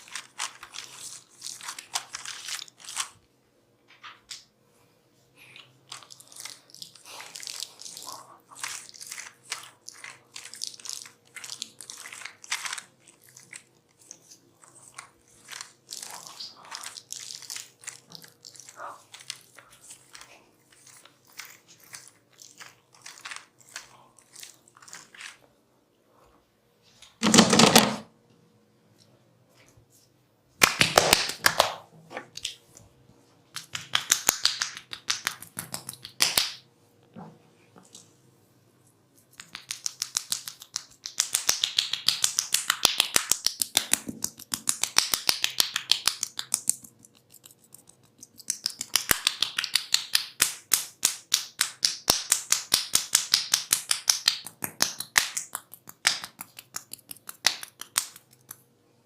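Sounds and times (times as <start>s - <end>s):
hands snapping and slapping: 30.6s - 32.6s, 33.5s - 36.6s, 39.3s - 58.6s.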